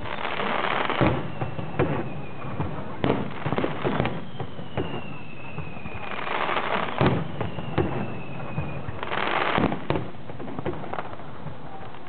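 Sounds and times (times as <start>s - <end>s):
falling whistling tone: 0.0s - 2.6s, 3.6s - 9.2s
firework bursts: 0.0s - 12.0s
firework crackling: 0.0s - 12.0s.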